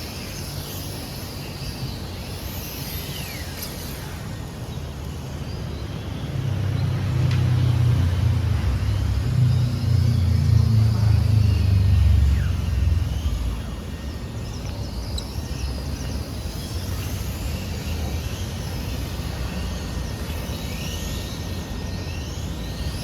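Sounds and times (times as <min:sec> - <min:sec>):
low engine rumble: 0:07.0 - 0:16.3.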